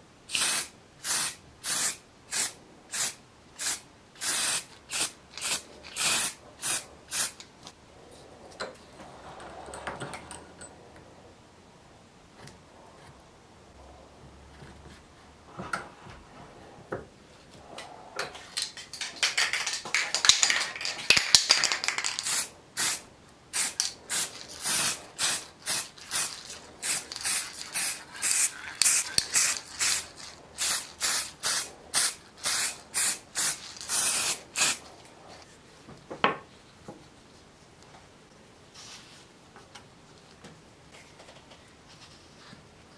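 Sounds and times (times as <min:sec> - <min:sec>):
aerosol spray hissing: 0:00.3 - 0:07.4, 0:21.4 - 0:34.8.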